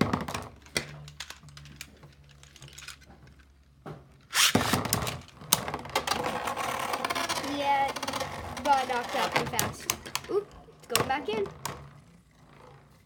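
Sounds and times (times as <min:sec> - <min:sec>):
spinning tops clashing: 0:04.3 - 0:04.8.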